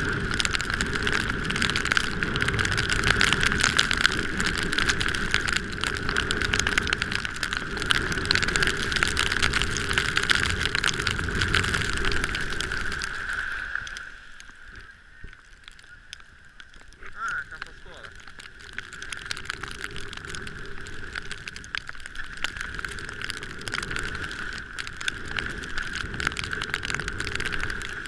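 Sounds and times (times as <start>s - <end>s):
tyres on snowy road: 0.0s - 16.0s
fine crackling: 0.0s - 28.0s.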